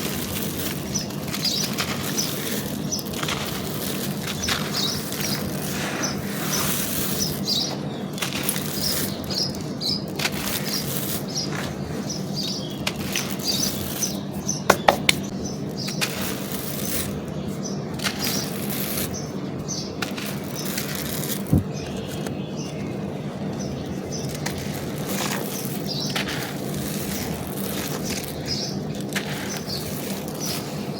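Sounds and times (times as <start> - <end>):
charcoal and clay crunching: 0.0 - 14.6, 15.2 - 30.9
dull knock: 14.7 - 15.2.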